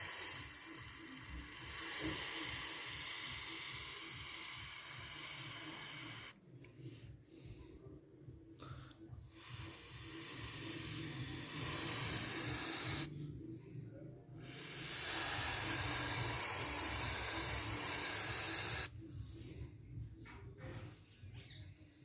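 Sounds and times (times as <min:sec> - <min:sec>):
aerosol spray hissing: 0:00.0 - 0:06.4, 0:09.3 - 0:13.1, 0:14.4 - 0:18.9.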